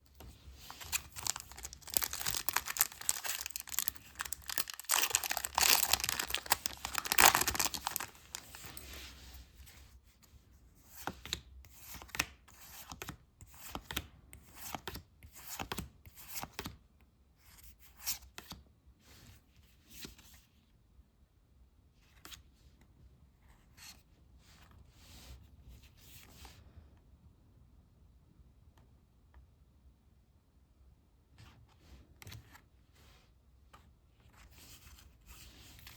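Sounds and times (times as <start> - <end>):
foil wrapper tearing and crinkling: 0.7 - 8.8.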